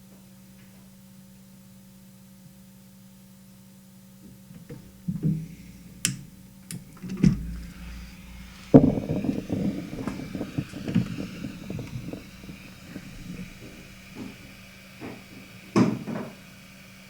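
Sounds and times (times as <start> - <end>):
heat gun fan blowing: 4.2 - 17.0
sharp handling clicks: 4.5 - 14.4.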